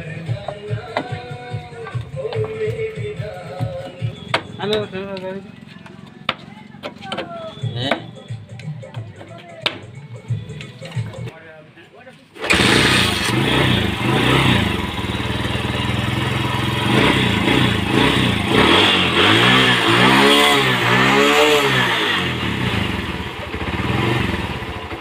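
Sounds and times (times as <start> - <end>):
motorcycle engine revving and idling: 12.4 - 25.0.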